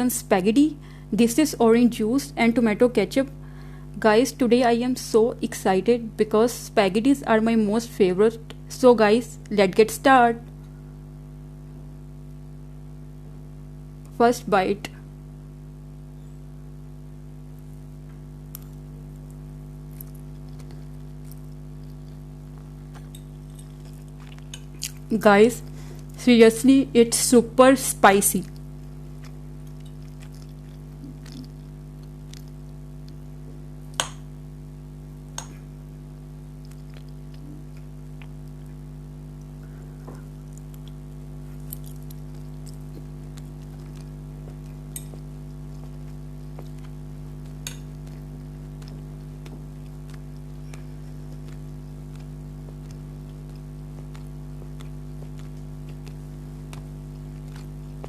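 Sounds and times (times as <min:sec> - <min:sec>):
steady electrical hum: 0:00.0 - 0:58.0
faint chewing: 0:18.4 - 0:26.2, 0:28.4 - 0:33.7, 0:36.4 - 0:58.0.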